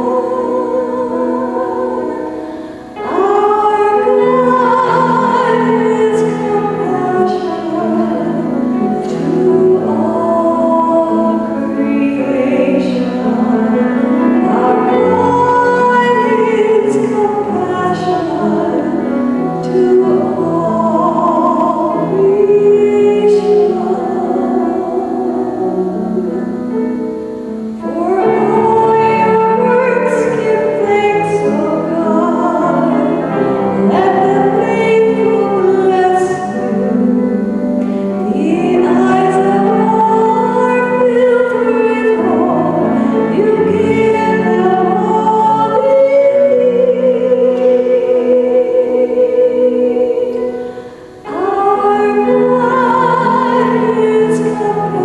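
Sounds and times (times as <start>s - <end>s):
instrumental accompaniment: 0.0s - 55.0s
person singing slow melody: 0.0s - 55.0s.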